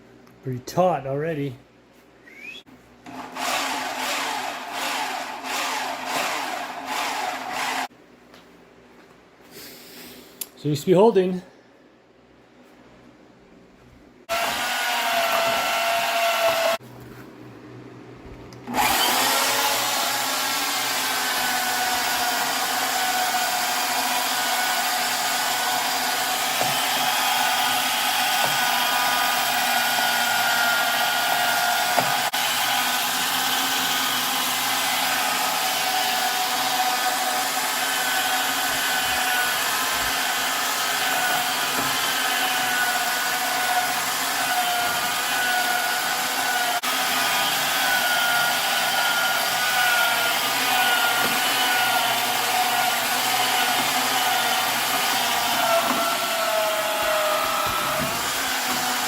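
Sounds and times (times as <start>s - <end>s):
electric motor running: 3.1s - 7.9s, 18.7s - 59.0s.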